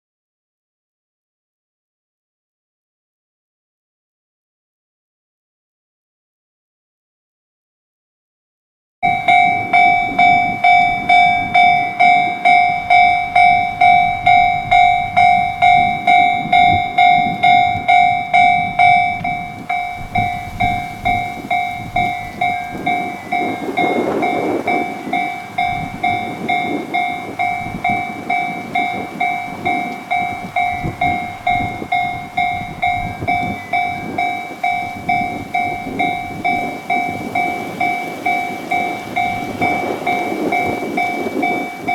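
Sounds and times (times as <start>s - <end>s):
level crossing alarm dinging: 9.0s - 41.9s
train rumbling: 9.0s - 41.9s.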